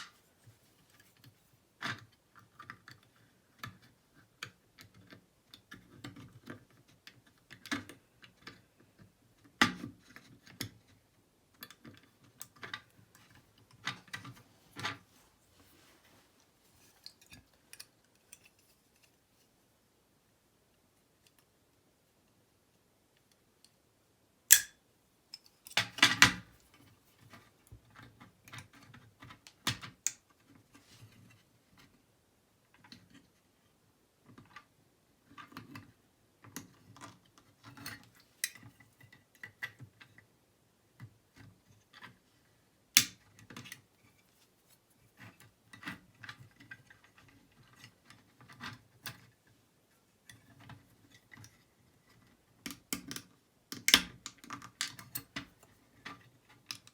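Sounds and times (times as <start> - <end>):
small metal lock parts clicking: 24.5 - 26.3.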